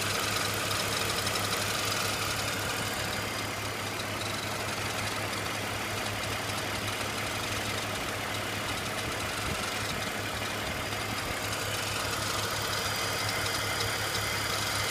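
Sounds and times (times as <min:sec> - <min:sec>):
car engine idling: 0:00.0 - 0:14.9
odd engine noise: 0:00.0 - 0:14.9.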